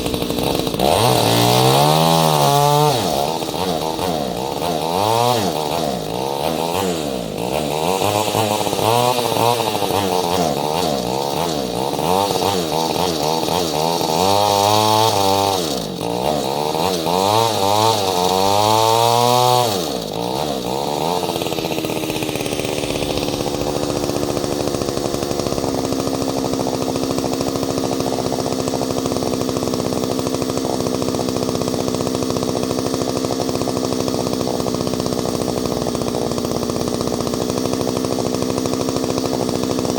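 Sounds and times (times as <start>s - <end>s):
chainsaw revving: 0.0s - 39.9s.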